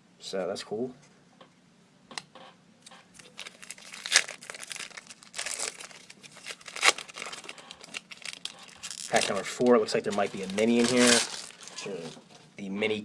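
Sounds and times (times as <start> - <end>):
wrapper crinkling and tearing: 3.2 - 12.2.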